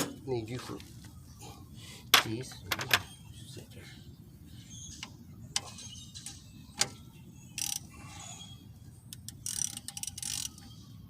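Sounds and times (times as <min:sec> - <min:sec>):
ratchet wrench clicking: 0:07.6 - 0:07.9, 0:09.1 - 0:10.6
rapid ratcheting: 0:09.2 - 0:10.6.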